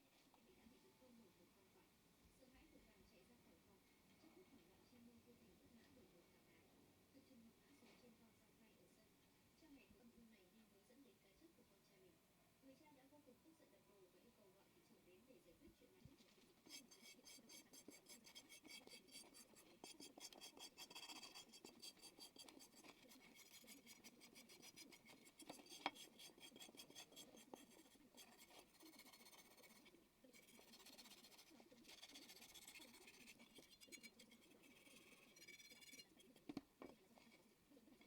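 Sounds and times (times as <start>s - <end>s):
hand scrubbing on a part: 16.6s - 38.0s.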